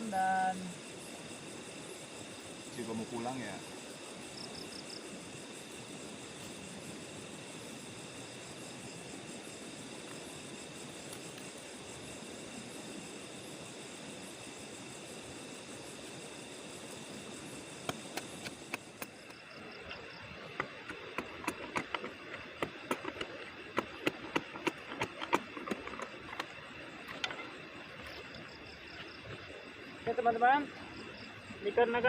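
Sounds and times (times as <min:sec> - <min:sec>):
crickets chirring: 0:00.0 - 0:32.0
sharp clicks and knocks: 0:20.5 - 0:27.6.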